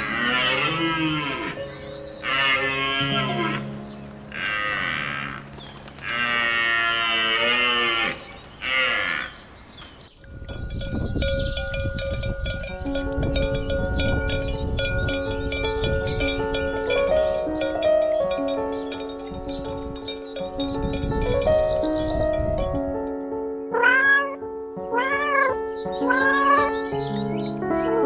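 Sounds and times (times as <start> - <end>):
background music: 0.0 - 8.2, 12.5 - 28.0
cow mooing: 0.0 - 9.3
plucked bell-like notes: 10.2 - 23.2.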